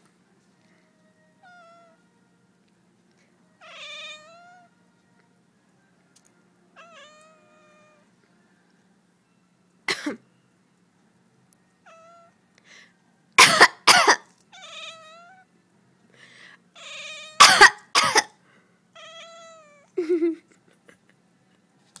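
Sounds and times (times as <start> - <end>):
cat meowing: 1.4 - 2.0, 3.6 - 4.7, 6.8 - 8.0, 11.8 - 12.4, 14.5 - 15.5, 16.8 - 17.5, 19.0 - 19.9
person coughing: 9.9 - 10.2, 13.4 - 14.2, 17.4 - 18.4.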